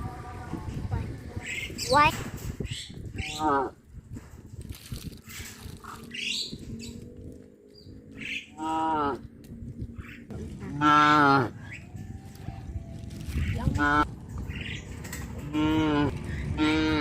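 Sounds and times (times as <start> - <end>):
cows mooing: 10.6 - 11.6, 15.4 - 17.0.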